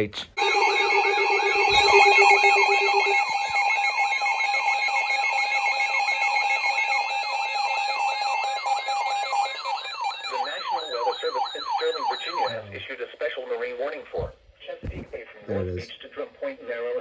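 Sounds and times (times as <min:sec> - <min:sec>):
falling siren-like sweep: 0:00.4 - 0:12.5
steady alarm tones: 0:00.4 - 0:12.6
wavering high tone: 0:00.4 - 0:12.6
person speaking a warning: 0:15.5 - 0:15.9.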